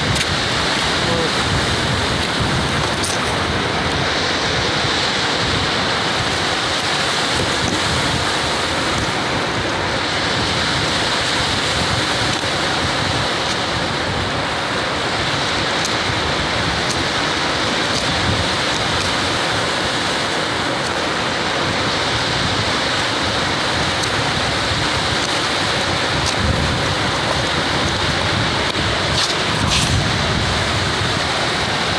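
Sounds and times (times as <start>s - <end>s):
ocean surf: 0.0s - 31.9s
wind: 0.0s - 31.9s.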